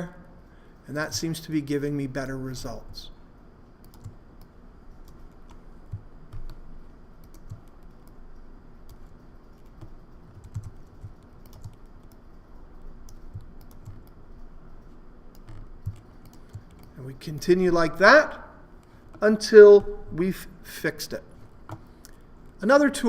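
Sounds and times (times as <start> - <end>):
mouse and keyboard clicks: 15.3 - 16.9.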